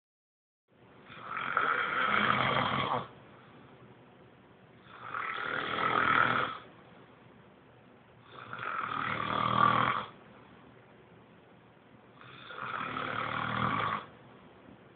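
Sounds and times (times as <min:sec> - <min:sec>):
rasping snores: 0:01.1 - 0:03.1, 0:04.8 - 0:06.7, 0:08.3 - 0:10.2, 0:12.2 - 0:14.1
quiet breathing: 0:03.0 - 0:04.1, 0:06.4 - 0:07.5.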